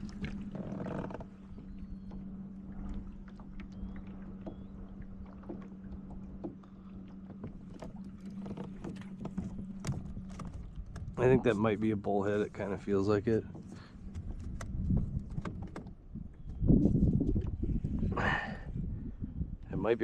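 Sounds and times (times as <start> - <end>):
steady low hum: 0.0 - 15.3.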